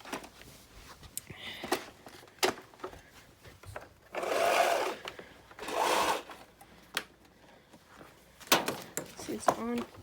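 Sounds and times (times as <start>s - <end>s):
vacuum cleaner whirring: 4.1s - 6.4s.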